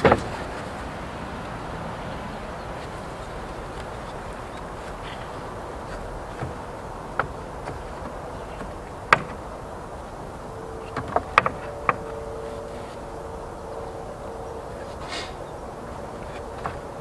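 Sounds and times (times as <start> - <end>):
wooden pallet boards knocking: 0.0 - 0.6, 4.6 - 9.6, 10.8 - 12.1, 16.2 - 17.0
faint steady hum: 0.0 - 17.0.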